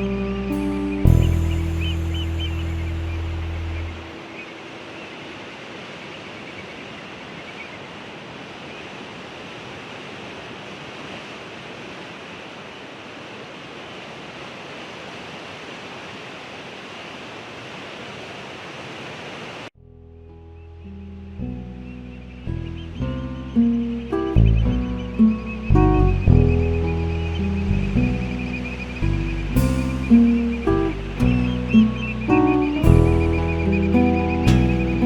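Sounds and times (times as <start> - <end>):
ocean surf washing: 0.0 - 19.8, 26.9 - 35.0.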